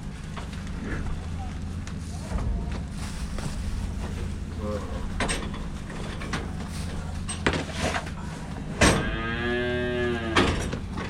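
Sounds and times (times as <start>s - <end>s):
engine idling hum: 0.0s - 11.0s
knocks and clanks: 0.2s - 9.3s, 10.2s - 11.0s
loud bang: 2.2s - 7.2s
cow mooing: 8.8s - 10.8s.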